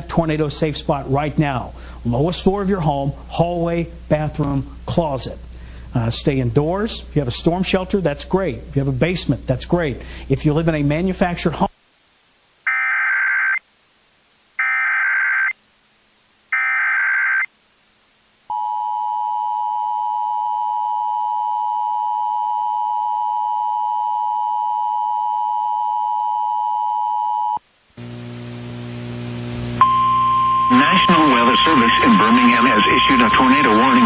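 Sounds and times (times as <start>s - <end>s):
low hum: 28.0s - 34.0s
two-tone attention signal: 29.8s - 34.0s
warbling digital data bursts: 30.7s - 34.0s.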